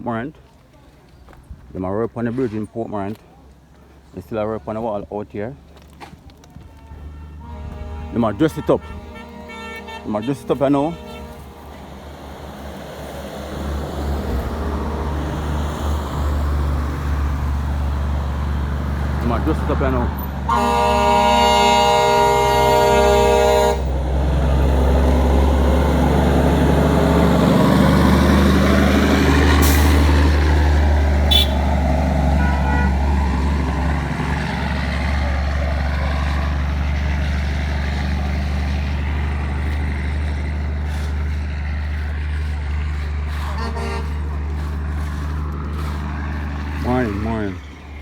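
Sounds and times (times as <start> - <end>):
large vehicle engine running: 5.8 - 48.0
vehicle horn blast: 6.8 - 11.7, 20.5 - 23.9, 31.3 - 31.8, 32.4 - 33.0, 43.3 - 44.8.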